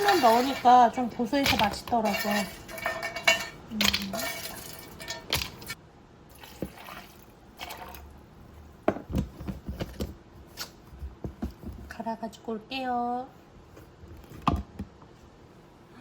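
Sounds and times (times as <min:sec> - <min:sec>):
wet pouring and splashing: 0:06.3 - 0:08.1.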